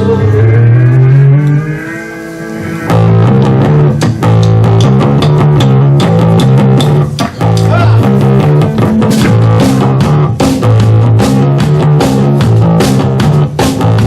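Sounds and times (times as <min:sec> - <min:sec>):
bass guitar: 0:00.0 - 0:14.0
electric guitar: 0:00.0 - 0:14.0
steady drum beat: 0:02.9 - 0:14.0.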